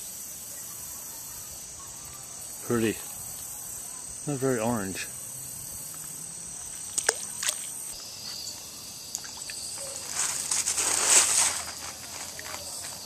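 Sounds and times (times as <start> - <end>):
insects chirring: 0.0 - 13.0
water splashing: 6.6 - 8.0, 9.1 - 9.7.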